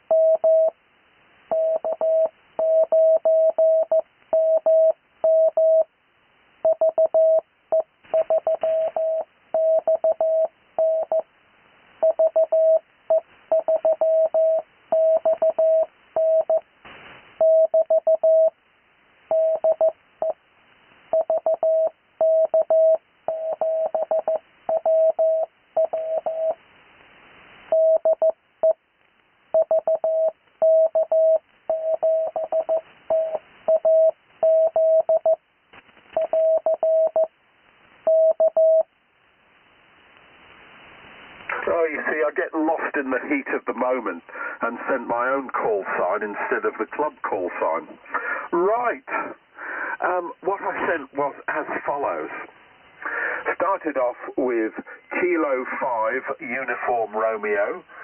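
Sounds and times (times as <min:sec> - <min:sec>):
faint radio hiss: 0:00.0 - 0:58.0
morse code tone: 0:01.5 - 0:05.9, 0:06.7 - 0:11.2, 0:12.0 - 0:16.6, 0:19.3 - 0:20.4, 0:21.2 - 0:26.6.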